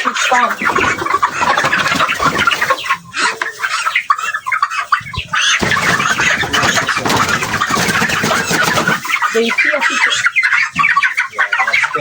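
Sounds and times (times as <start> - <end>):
chickens clucking: 0.0 - 12.0
rustling: 5.4 - 9.2.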